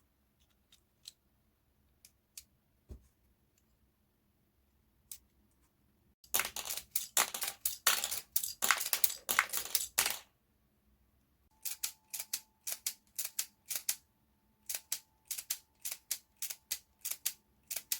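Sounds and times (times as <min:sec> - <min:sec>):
sharp plastic clicks: 0:11.6 - 0:14.0, 0:14.6 - 0:17.9.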